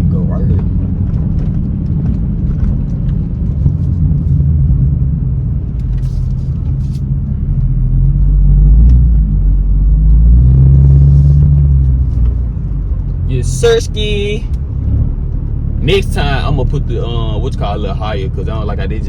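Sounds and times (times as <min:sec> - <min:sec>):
car exhaust rumble: 0:00.0 - 0:19.0.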